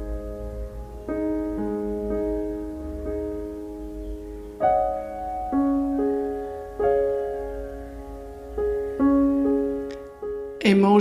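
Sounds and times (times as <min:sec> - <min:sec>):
gentle piano music: 0:00.0 - 0:11.0.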